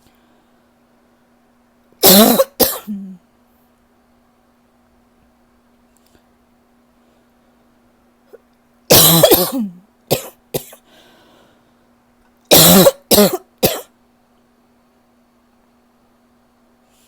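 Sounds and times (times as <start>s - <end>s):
faint breath: 0.0s - 1.4s, 6.9s - 7.7s, 10.8s - 12.0s
person coughing: 2.0s - 3.2s, 8.9s - 10.8s, 12.5s - 13.9s.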